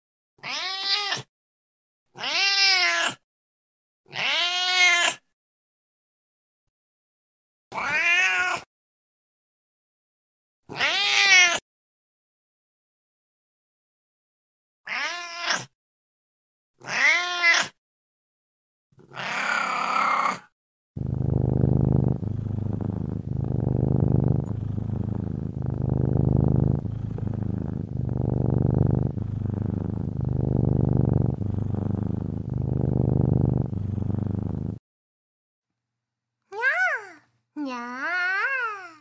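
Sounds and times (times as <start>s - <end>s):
cat meowing: 0.4s - 1.3s, 2.2s - 3.2s, 4.1s - 5.2s, 7.8s - 8.7s, 10.7s - 11.6s, 14.9s - 15.7s, 16.8s - 17.8s, 19.1s - 20.5s
cat purring: 21.0s - 34.8s.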